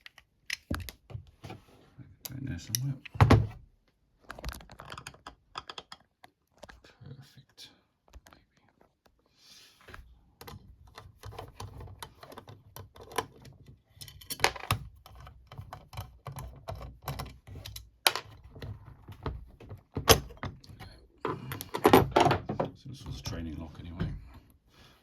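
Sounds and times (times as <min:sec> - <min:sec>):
small metal parts clicking: 0:14.0 - 0:18.2.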